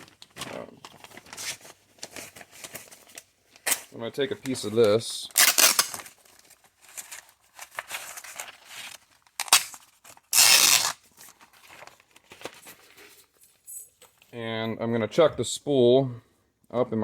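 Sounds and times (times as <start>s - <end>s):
abrasive cloth tearing: 5.4s - 6.0s, 9.4s - 11.0s.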